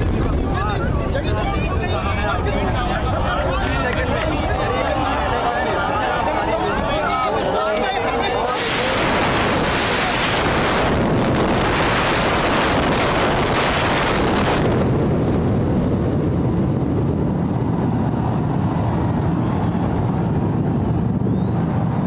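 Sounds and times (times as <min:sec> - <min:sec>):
building demolition rumble: 0:08.4 - 0:22.0
hiss: 0:08.5 - 0:14.4.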